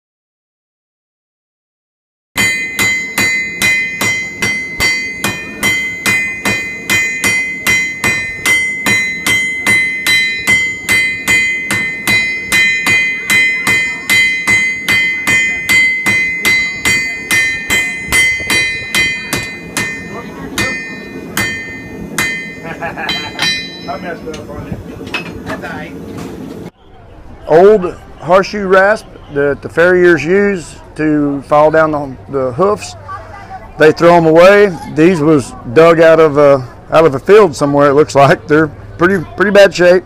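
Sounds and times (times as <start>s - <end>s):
hammer striking anvil: 2.4s - 24.5s
anvil ringing: 2.4s - 25.4s.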